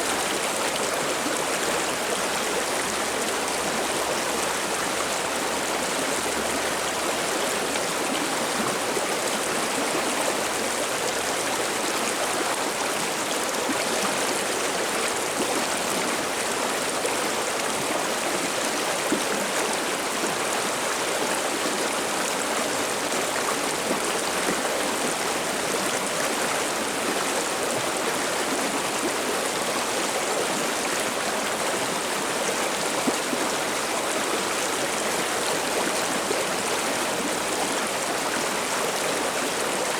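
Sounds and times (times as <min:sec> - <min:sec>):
stream water babbling: 0:00.0 - 0:39.9.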